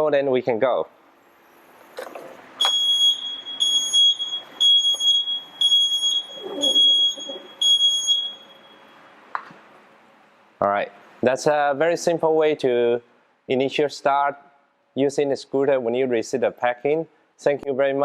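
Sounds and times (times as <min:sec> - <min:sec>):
scooter warning beeps: 0:02.6 - 0:08.9.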